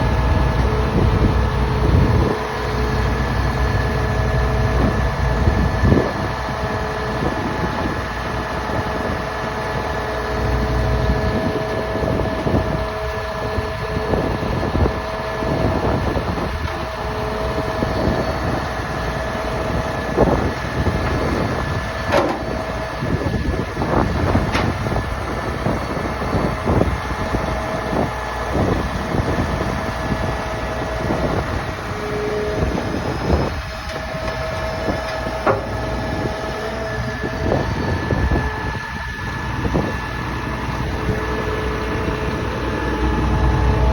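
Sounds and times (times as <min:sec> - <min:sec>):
concrete pump engine rumble: 0:00.0 - 0:43.9
steady whine: 0:00.0 - 0:43.9
knocks and clanks: 0:22.0 - 0:22.8, 0:24.3 - 0:25.0, 0:33.8 - 0:36.1.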